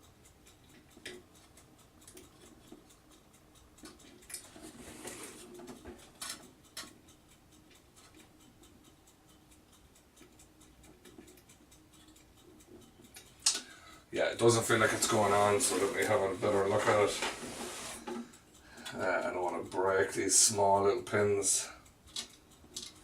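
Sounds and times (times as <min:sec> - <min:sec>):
scraping rustle: 0:04.4 - 0:06.0, 0:14.4 - 0:18.2.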